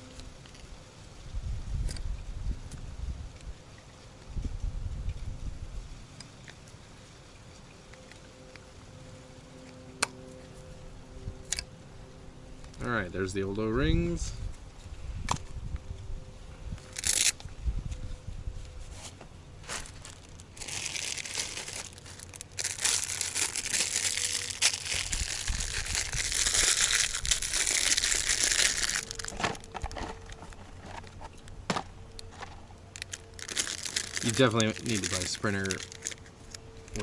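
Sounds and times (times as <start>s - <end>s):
packaging crinkling: 16.8s - 17.4s, 19.6s - 31.3s, 32.1s - 37.0s.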